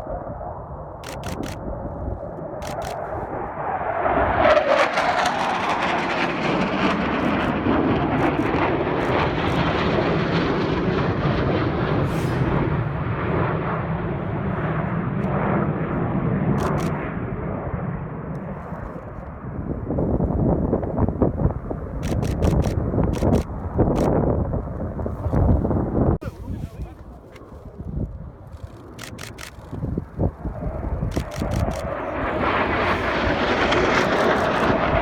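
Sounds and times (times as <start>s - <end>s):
jet passing with loud rumble: 0.0s - 35.0s.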